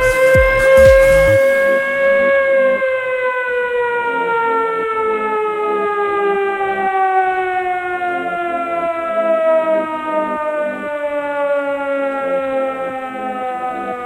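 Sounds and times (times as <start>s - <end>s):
faint repeating pulse: 0.0s - 1.9s
siren wailing with falling pitch: 0.0s - 4.5s.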